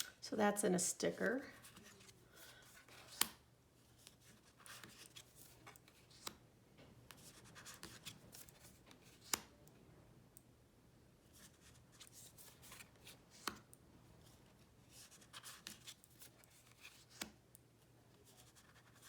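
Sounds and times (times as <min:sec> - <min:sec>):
cards rustling and sliding: 0:01.5 - 0:06.4, 0:07.1 - 0:09.6, 0:11.3 - 0:17.4.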